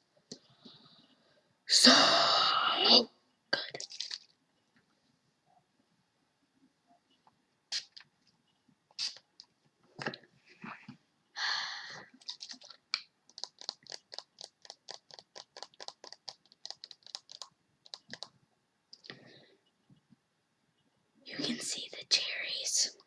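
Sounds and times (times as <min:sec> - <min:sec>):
rapid fingernail tapping: 0:13.3 - 0:18.3.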